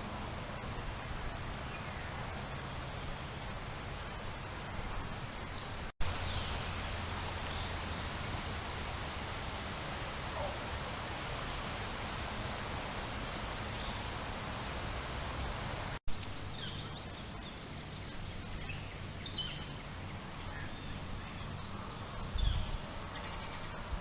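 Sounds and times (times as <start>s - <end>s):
steady outdoor hiss: 0.0s - 24.0s
small birds chirping: 1.2s - 6.8s, 13.6s - 23.9s.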